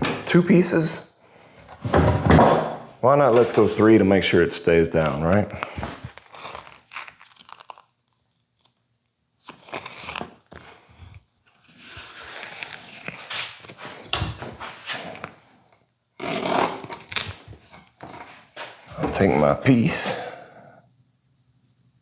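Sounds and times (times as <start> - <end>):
tape pulled off roll and torn: 5.6 - 8.8, 9.4 - 10.8, 16.2 - 18.8.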